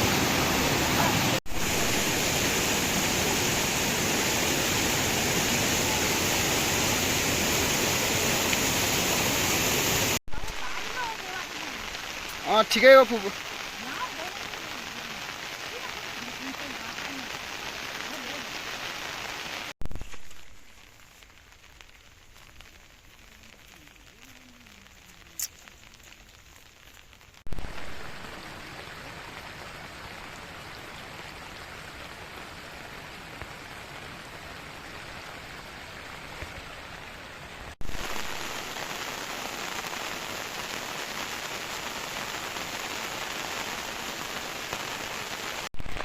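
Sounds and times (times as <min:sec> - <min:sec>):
heavy rain falling: 0:00.0 - 0:46.0.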